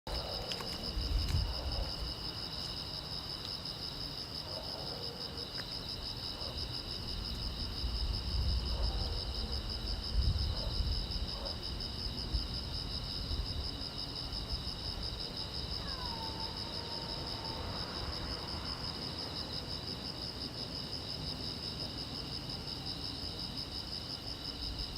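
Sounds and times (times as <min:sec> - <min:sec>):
crickets chirping: 0:00.1 - 0:24.9.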